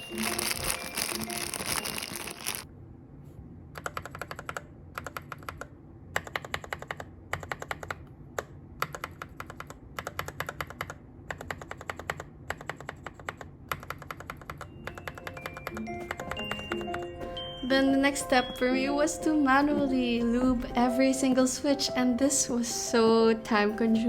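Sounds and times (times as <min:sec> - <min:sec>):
mechanical keyboard clicking: 0:03.8 - 0:17.0.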